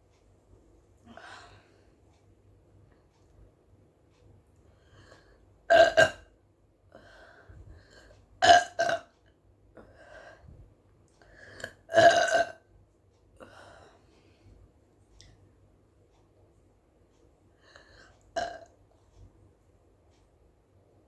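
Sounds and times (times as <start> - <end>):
soft breathing: 0.9 - 2.3, 4.6 - 5.5, 6.9 - 8.3, 9.8 - 11.8, 13.4 - 15.4, 17.5 - 18.3
woman burping: 5.7 - 6.2, 8.4 - 9.1, 11.9 - 12.6, 18.4 - 18.7.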